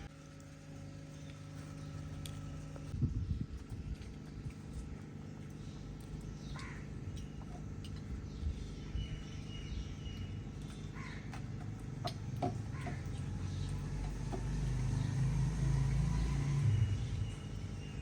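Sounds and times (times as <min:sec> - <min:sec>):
low rumble: 0:02.8 - 0:10.7
bird calls: 0:05.4 - 0:15.3.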